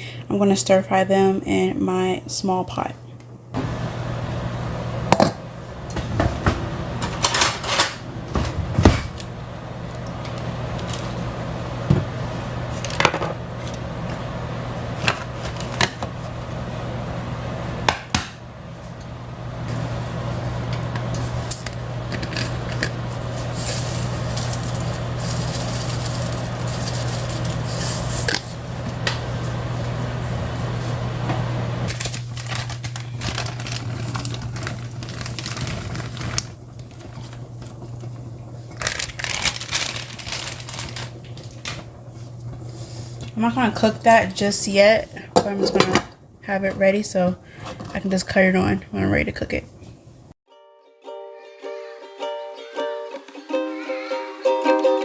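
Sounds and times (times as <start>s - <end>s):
steady low hum: 0.0s - 50.4s
dishes and pots clattering: 45.4s - 46.2s.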